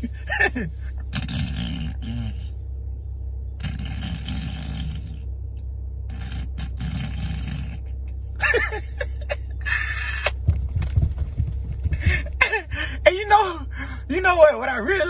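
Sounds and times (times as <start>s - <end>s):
person snoring: 1.1s - 2.5s, 3.6s - 5.2s, 6.1s - 7.9s.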